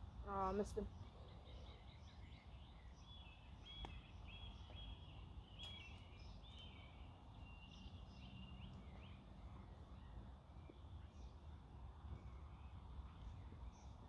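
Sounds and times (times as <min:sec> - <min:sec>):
small bird singing: 0:00.2 - 0:11.4.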